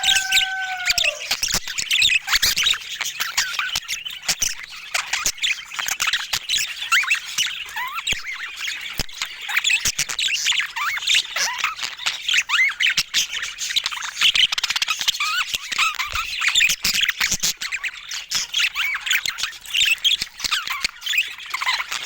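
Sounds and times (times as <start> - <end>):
budgerigars chattering and warbling: 0.0 - 1.3.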